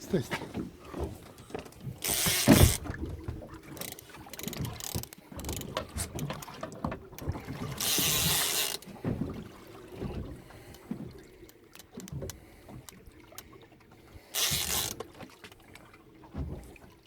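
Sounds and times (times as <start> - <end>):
fishing reel gears clicking: 2.0 - 2.8, 7.8 - 8.8, 14.3 - 15.0.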